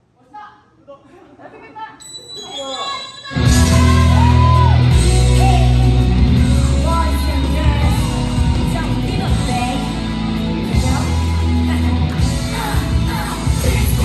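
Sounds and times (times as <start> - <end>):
cheer routine music with heavy bass: 3.4 - 14.0
person singing: 3.4 - 14.0.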